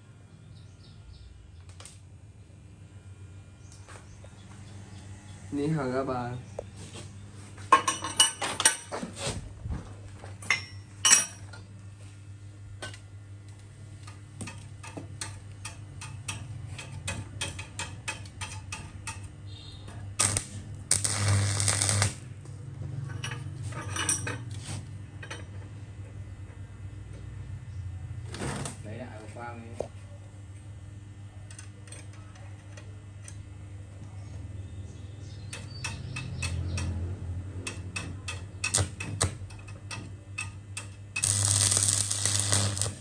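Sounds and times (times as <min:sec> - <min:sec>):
crackling burst: 0:20.2 - 0:22.2, 0:41.2 - 0:43.0.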